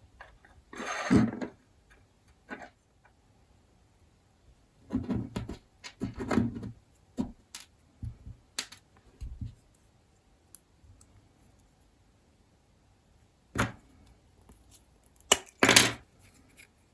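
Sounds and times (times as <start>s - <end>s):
small metal parts clicking and scraping: 14.5s - 16.8s.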